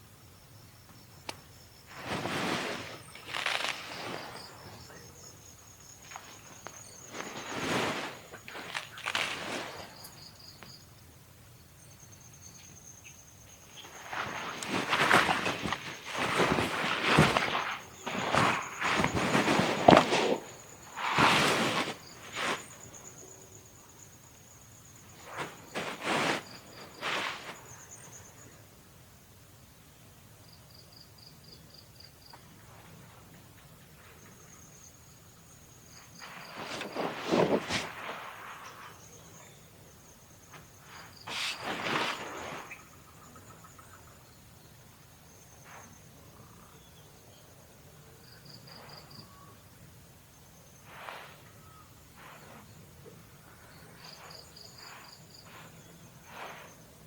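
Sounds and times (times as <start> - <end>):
insects chirping: 0.0 - 57.0
rustling swishes: 1.9 - 10.2, 13.7 - 23.4, 25.0 - 28.2, 35.9 - 39.4, 40.5 - 42.9.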